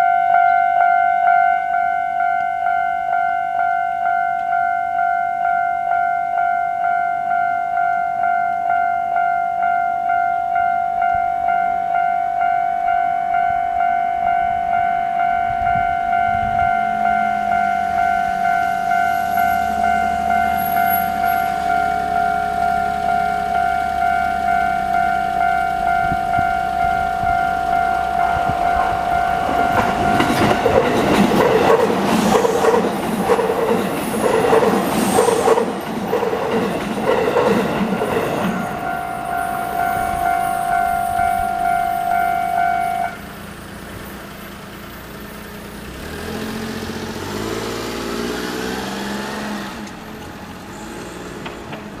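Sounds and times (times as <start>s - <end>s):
level-crossing alarm ringing: 0.0s - 43.3s
train wheels rattling: 16.4s - 41.6s, 48.4s - 52.0s.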